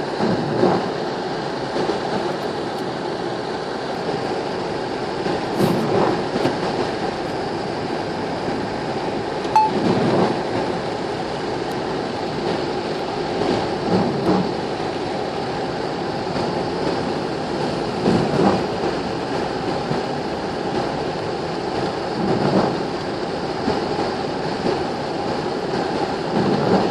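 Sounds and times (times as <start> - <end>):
steady rain falling: 0.0 - 26.9
sharp clink: 9.6 - 9.8.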